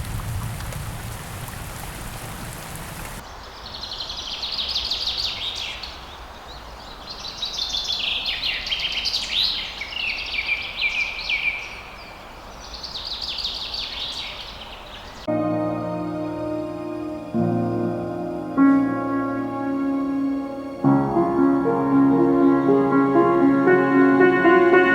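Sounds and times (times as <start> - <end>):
background hiss: 0.0 - 24.9
music: 15.3 - 24.9.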